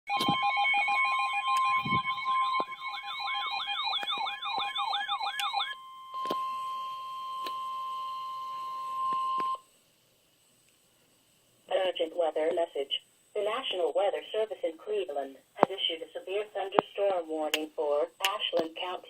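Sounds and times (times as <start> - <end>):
steady alarm tone: 0.1 - 9.6
sweeping siren-like electronic alarm: 0.1 - 9.6.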